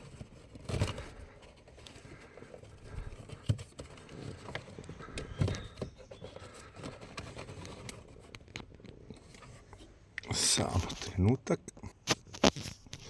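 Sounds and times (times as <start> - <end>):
hands knocking and scraping plastic: 0.0 - 9.9.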